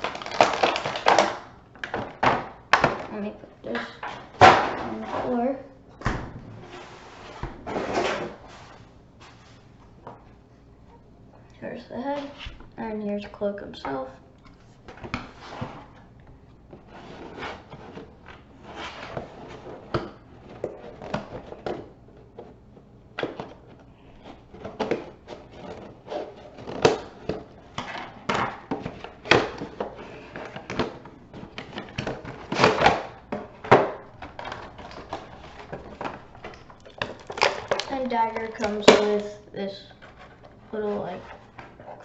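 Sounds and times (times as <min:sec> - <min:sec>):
plastic packaging clicks and knocks: 0:00.0 - 0:03.1, 0:26.5 - 0:39.3
cardboard and plastic rustling: 0:00.0 - 0:03.3, 0:14.6 - 0:42.0.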